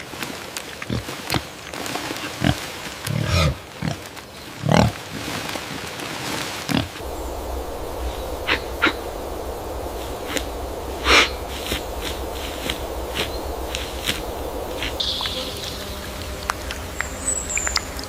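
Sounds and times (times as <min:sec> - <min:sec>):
steady low rumble: 0:07.0 - 0:18.0.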